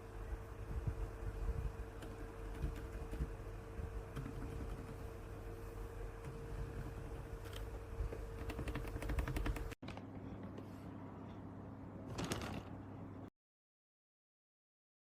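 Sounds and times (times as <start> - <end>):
mechanical keyboard typing: 4.1 - 5.0, 8.3 - 9.8.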